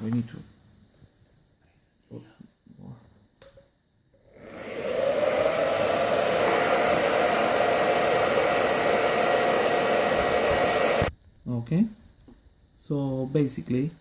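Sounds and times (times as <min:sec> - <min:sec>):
hair dryer running: 0:04.3 - 0:11.1.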